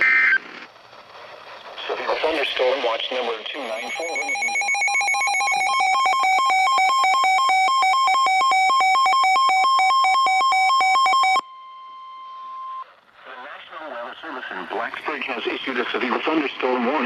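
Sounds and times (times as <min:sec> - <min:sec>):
two-pitch warbling alarm: 0:03.6 - 0:12.8
faint steady tone: 0:11.2 - 0:16.0.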